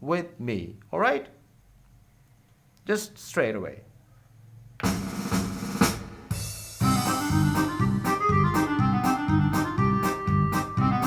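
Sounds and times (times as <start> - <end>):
organ-like keyboard melody: 4.8 - 11.0
steady drum beat: 4.8 - 11.0.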